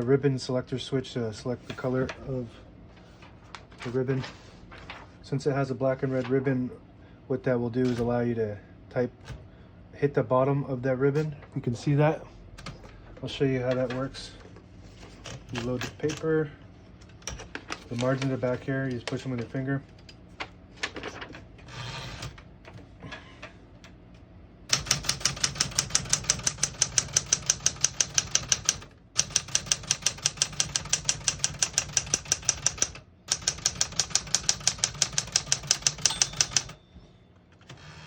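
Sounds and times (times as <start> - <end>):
manual typewriter typing: 15.2 - 16.3, 17.1 - 19.6, 20.8 - 22.4, 24.7 - 36.8.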